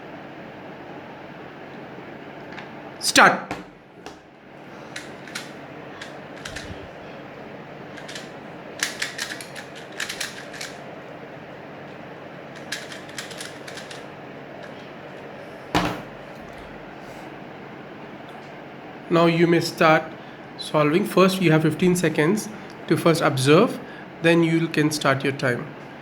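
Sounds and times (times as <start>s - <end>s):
puzzle cube layers clicking: 8.0s - 10.8s, 12.6s - 14.0s
loud knock: 15.7s - 16.1s.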